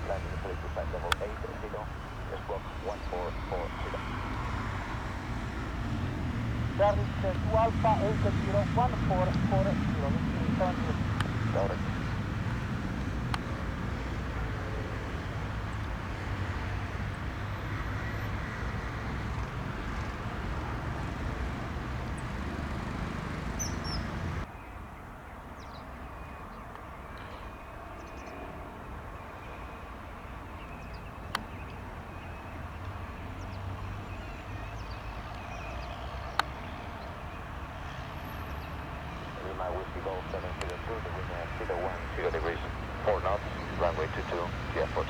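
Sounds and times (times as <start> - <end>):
sharp clicks: 0.0 - 4.0, 39.4 - 42.4
steady low rumble: 0.0 - 4.2, 6.5 - 13.8, 39.4 - 45.0.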